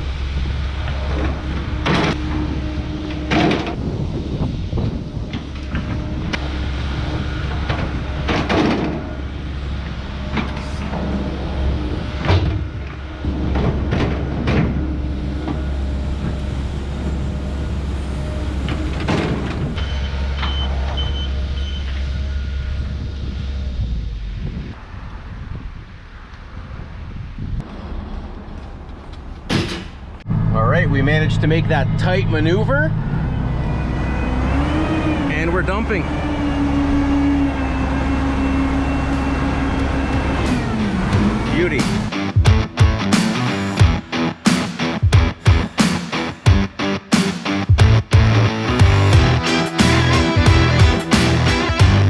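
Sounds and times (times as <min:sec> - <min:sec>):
earthmoving machine engine running: 0:00.0 - 0:25.0, 0:30.3 - 0:52.0
clanks and squeals of tracks: 0:00.1 - 0:24.2, 0:27.6 - 0:42.2.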